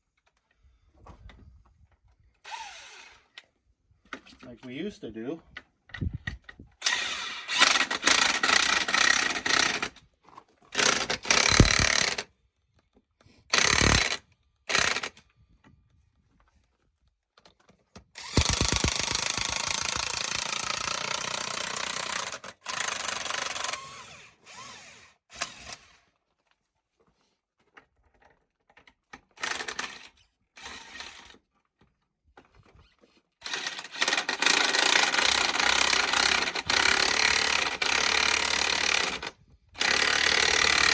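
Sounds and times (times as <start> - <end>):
power tool running: 2.5 - 3.2, 10.8 - 12.2, 13.5 - 15.1, 18.2 - 25.9, 33.4 - 40.9.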